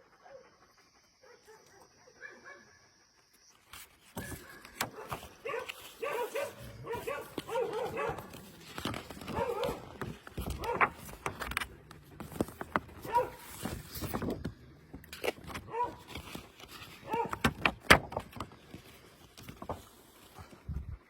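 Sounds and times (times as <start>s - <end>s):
dogs barking: 1.2s - 2.8s, 4.2s - 11.3s, 13.0s - 13.6s, 15.6s - 16.2s, 17.0s - 17.6s
dogs whining: 5.4s - 13.5s.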